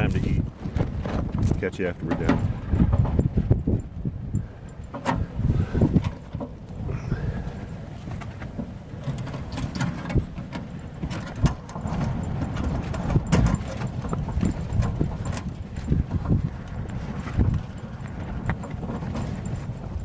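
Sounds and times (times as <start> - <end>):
wind buffeting: 0.0 - 20.0
knocks and clicks: 0.1 - 4.1, 8.6 - 19.6.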